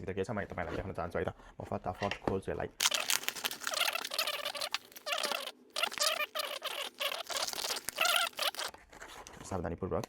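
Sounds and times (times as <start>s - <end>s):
packaging crinkling and tearing: 2.8s - 9.2s.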